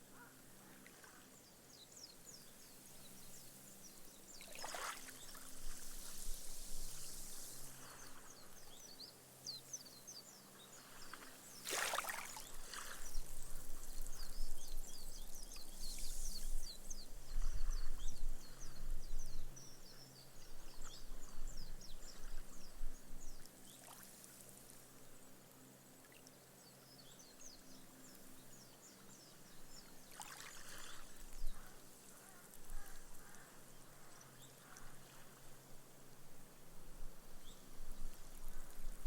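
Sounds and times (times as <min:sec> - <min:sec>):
small waves lapping on beach: 0:04.2 - 0:08.7, 0:10.6 - 0:14.0, 0:28.9 - 0:36.2.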